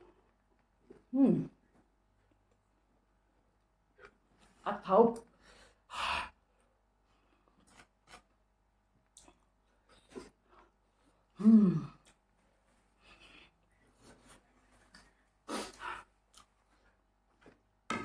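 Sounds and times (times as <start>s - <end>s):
person humming: 11.4s - 12.1s
person chewing food: 14.9s - 17.6s.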